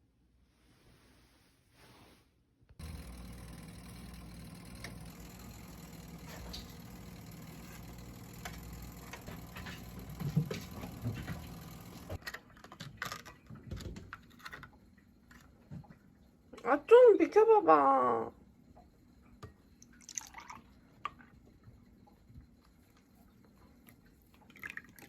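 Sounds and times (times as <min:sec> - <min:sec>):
low motor hum: 0:02.8 - 0:12.2.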